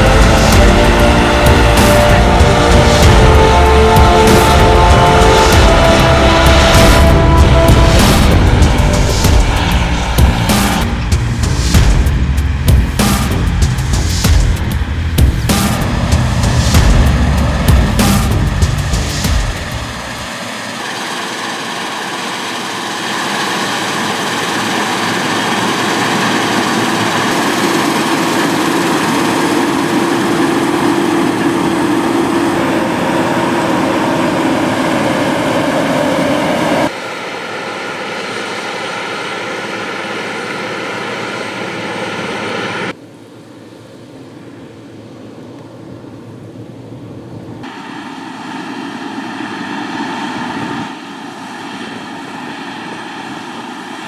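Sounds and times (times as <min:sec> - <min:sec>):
harvester and tractor engines: 0:00.0 - 0:43.0.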